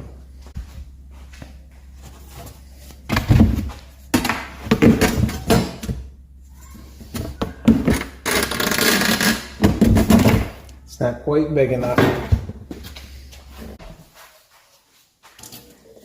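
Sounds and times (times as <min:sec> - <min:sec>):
objects knocking and clunking: 0:01.8 - 0:10.8, 0:11.8 - 0:13.8.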